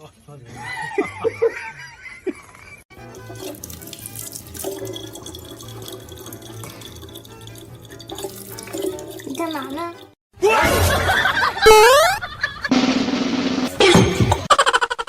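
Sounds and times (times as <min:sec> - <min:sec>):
water running: 0:02.9 - 0:10.2.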